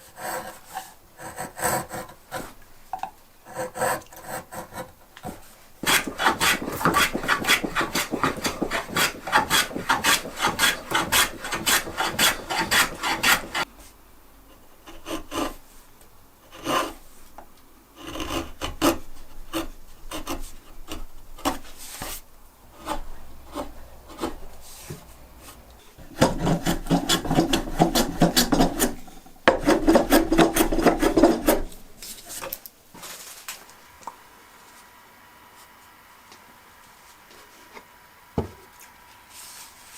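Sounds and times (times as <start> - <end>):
abrasive tool scraping wood: 0.0 - 2.6, 3.5 - 13.7, 14.8 - 15.6, 16.5 - 17.2, 18.0 - 33.1.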